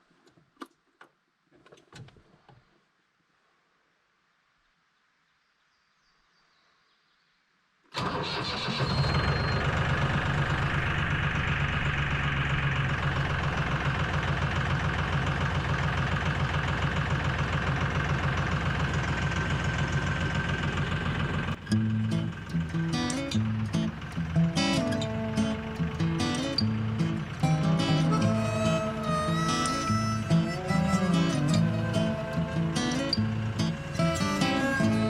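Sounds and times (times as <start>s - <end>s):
tractor engine starting and idling: 7.9s - 35.0s.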